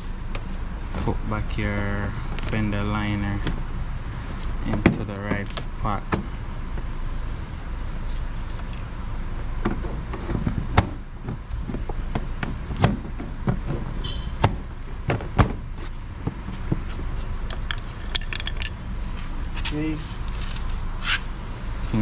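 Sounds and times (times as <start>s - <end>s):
plastic knocks and rubbing: 9.6s - 18.8s.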